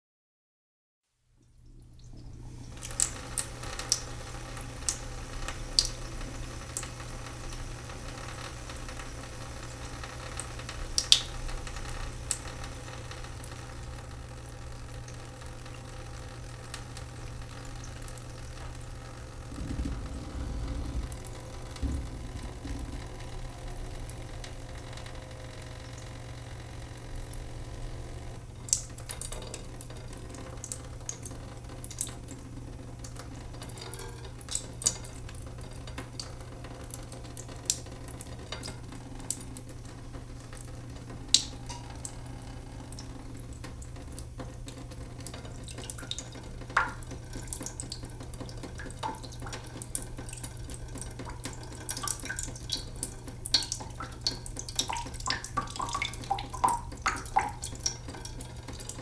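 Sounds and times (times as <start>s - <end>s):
steady low hum: 19.2s - 29.2s
water drops from a sink: 19.4s - 25.2s, 45.2s - 59.0s.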